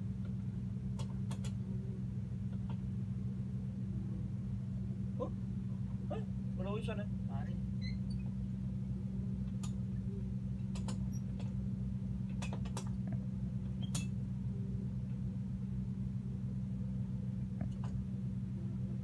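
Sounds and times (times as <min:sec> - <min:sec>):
boat engine droning: 0:00.0 - 0:19.0
sharp clicks and creaks: 0:10.7 - 0:11.6.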